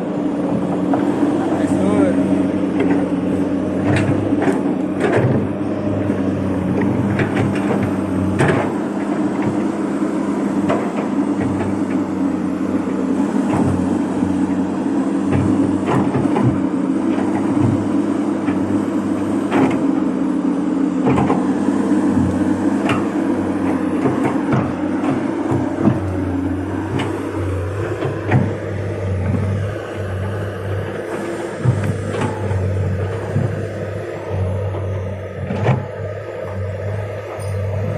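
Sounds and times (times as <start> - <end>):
excavator diesel engine running: 0.0 - 37.9
knocks and clanks: 3.8 - 5.6, 6.7 - 9.7, 15.2 - 18.6, 21.0 - 21.5, 22.1 - 26.2, 31.1 - 36.6.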